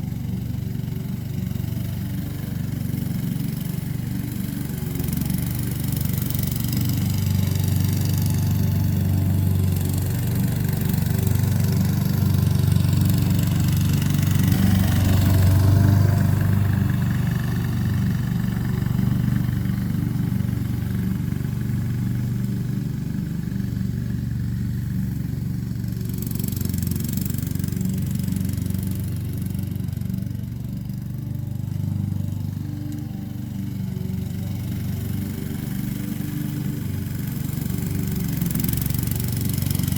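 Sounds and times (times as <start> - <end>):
lawn mower engine running: 0.0 - 39.9.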